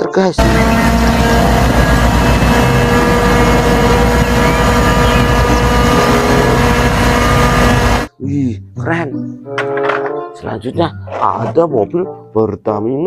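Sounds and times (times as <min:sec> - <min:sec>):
truck engine droning: 0:00.4 - 0:08.1.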